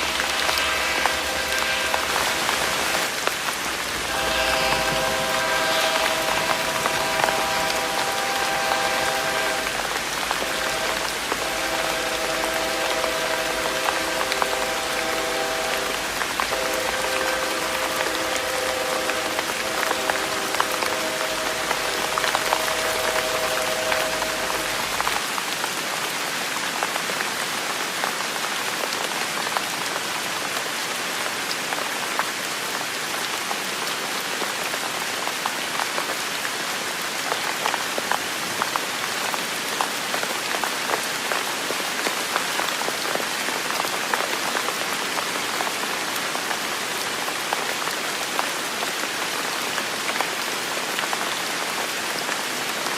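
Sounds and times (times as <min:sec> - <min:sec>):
distant train horn chord: 0:00.0 - 0:03.2, 0:03.8 - 0:25.2
raindrops ticking on surfaces: 0:00.0 - 0:52.9
steady rain falling: 0:00.0 - 0:52.9.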